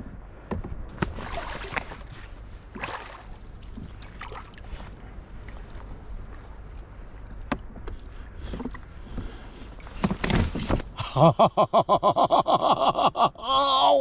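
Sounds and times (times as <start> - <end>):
water splashing against kayak: 0.6 - 10.9.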